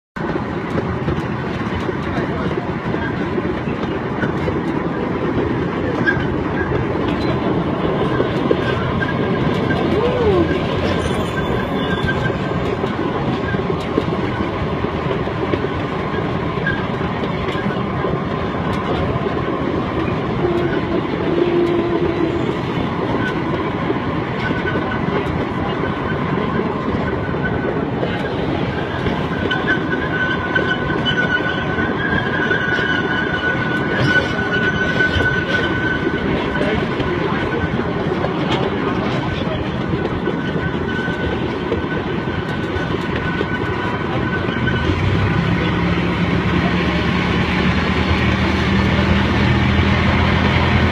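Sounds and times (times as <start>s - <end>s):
train rumbling on track: 0.2s - 50.9s
wheels clacking over rails: 0.2s - 50.9s
high wheel squeal: 8.1s - 13.6s, 29.1s - 37.9s, 40.3s - 46.3s.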